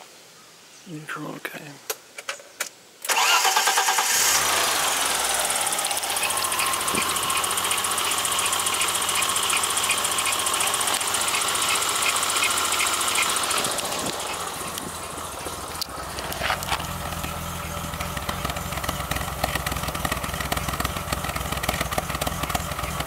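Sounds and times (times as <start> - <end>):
car engine starting and idling roughly: 3.1 - 23.0.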